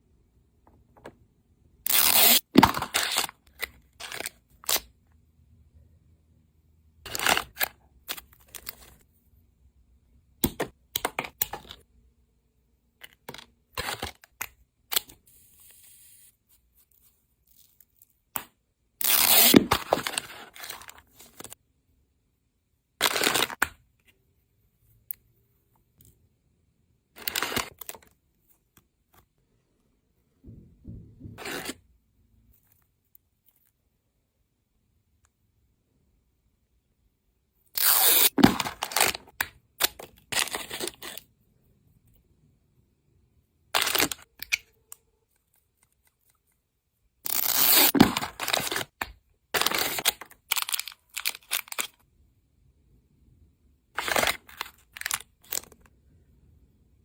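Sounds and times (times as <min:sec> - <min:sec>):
packaging tearing and crinkling: 0:49.6 - 0:52.0, 0:54.0 - 0:55.8.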